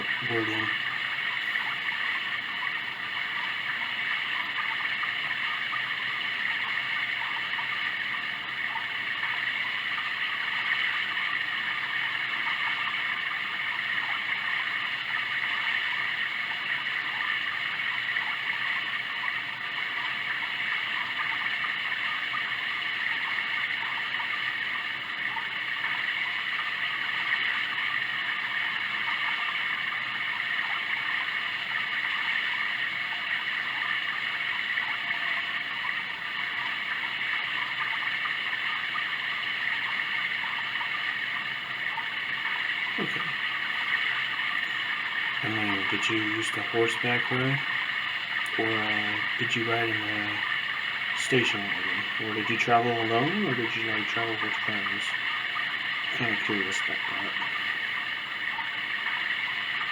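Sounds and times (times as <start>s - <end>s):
running water from sound machine: 0.0s - 59.9s.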